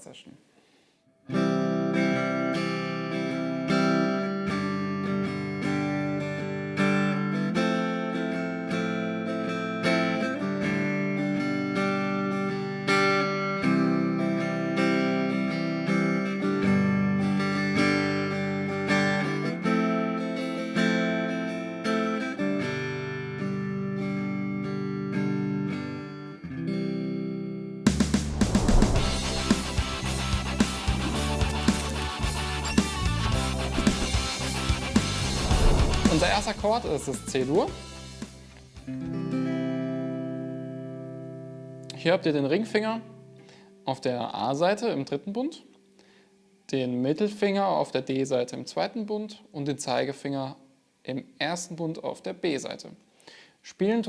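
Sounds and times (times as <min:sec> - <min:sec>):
guitar strumming chords: 0:01.3 - 0:43.9.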